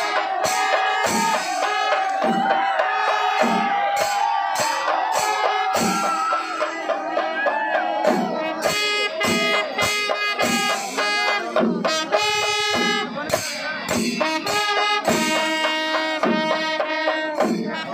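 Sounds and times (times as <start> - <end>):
brass horns playing: 0.0 - 2.3, 5.2 - 6.7, 8.4 - 13.2, 14.2 - 17.9
sharp percussion strokes: 0.0 - 17.9.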